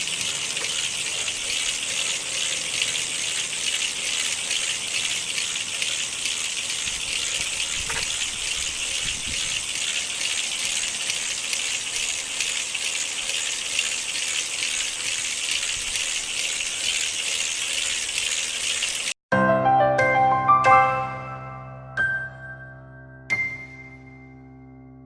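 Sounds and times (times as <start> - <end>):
toy car motor whirring: 0.0 - 19.2.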